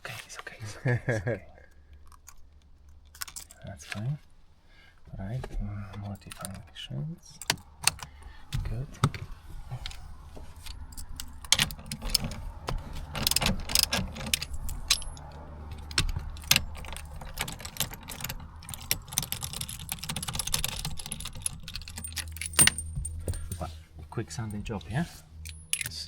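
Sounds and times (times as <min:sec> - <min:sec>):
metallic clicks and rattles from tools: 0:01.9 - 0:04.1, 0:09.8 - 0:23.7, 0:24.5 - 0:26.0.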